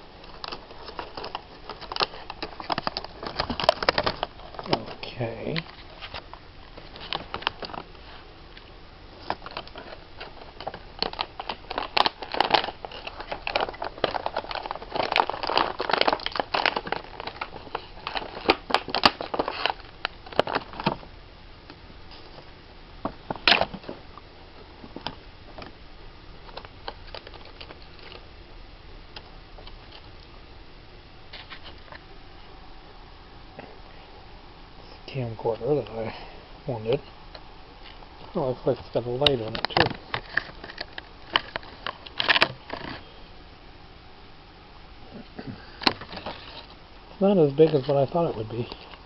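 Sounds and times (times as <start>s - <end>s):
packaging crinkling: 0.2s - 21.1s, 26.4s - 28.2s, 37.8s - 43.1s, 45.1s - 49.0s.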